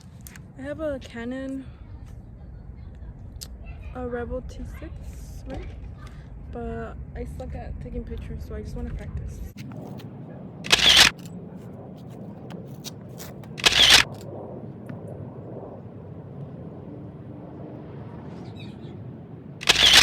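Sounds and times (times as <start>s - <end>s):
camera shutter firing: 10.7s - 11.3s, 13.6s - 14.2s, 19.6s - 20.0s.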